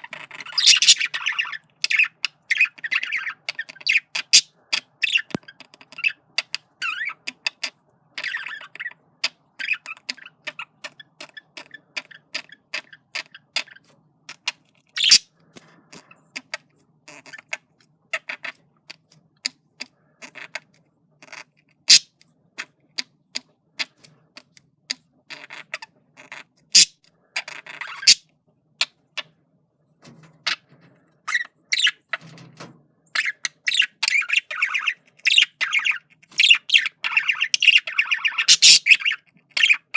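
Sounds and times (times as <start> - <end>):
budgerigar chattering: 0.0 - 5.4, 6.0 - 15.2, 25.4 - 28.2, 33.2 - 39.9.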